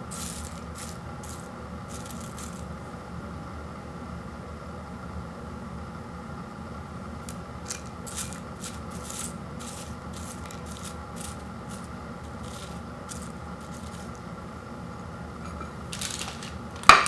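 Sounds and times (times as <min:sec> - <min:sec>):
rustling scraping handling sounds: 0:00.0 - 0:02.9, 0:07.2 - 0:14.4, 0:15.5 - 0:17.0
steady low hum: 0:00.0 - 0:17.0.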